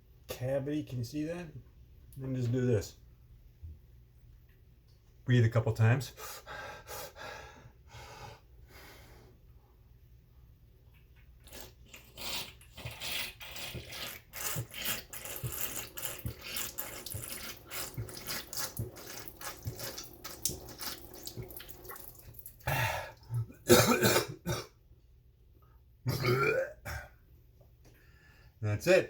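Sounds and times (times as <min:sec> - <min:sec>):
person breathing: 0:06.2 - 0:09.4, 0:22.6 - 0:23.3, 0:28.0 - 0:28.6
person slurping water: 0:11.0 - 0:23.5.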